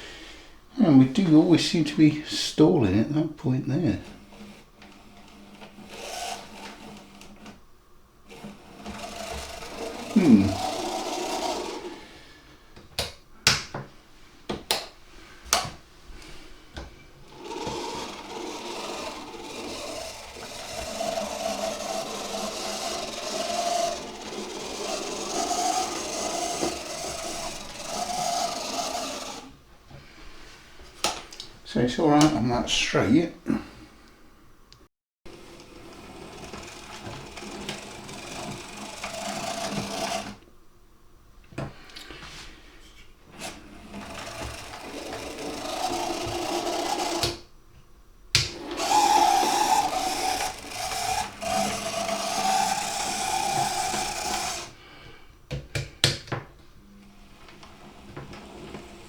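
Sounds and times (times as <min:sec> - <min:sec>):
small electric motor whirring: 0:03.8 - 0:07.6, 0:08.2 - 0:12.4, 0:17.2 - 0:29.6, 0:35.3 - 0:40.4, 0:43.3 - 0:47.5, 0:48.4 - 0:54.8.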